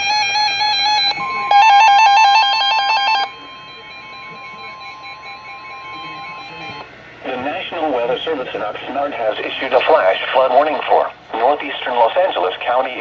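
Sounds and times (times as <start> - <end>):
steady alarm tone: 0.0 - 6.9.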